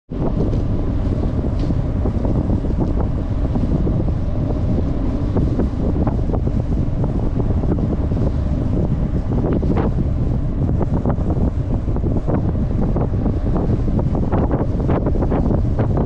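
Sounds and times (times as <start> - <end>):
strong wind buffeting microphone: 0.1 - 16.0.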